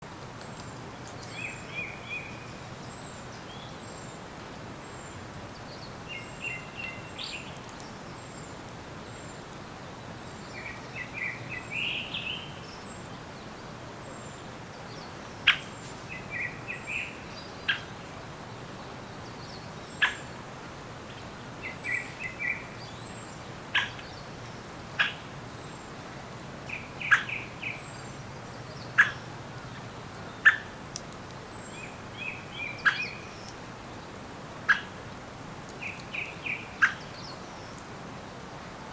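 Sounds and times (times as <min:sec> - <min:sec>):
low background hiss: 0:00.1 - 0:38.9
bird repeating song phrase: 0:26.7 - 0:30.7, 0:31.6 - 0:33.6.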